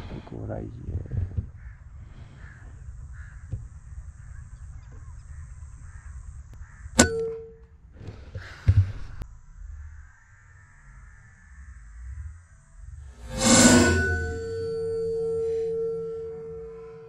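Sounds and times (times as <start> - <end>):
metallic ring: 13.2 - 17.0.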